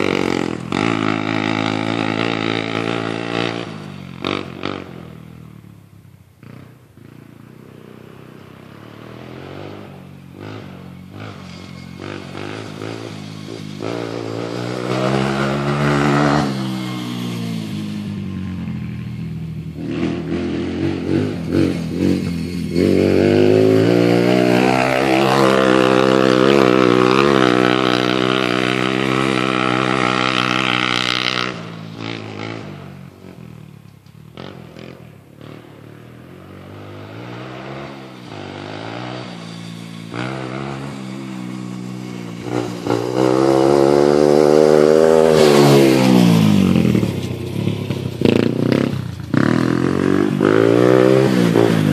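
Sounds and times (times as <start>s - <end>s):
small atv engine revving: 0.0s - 5.8s, 6.4s - 51.9s.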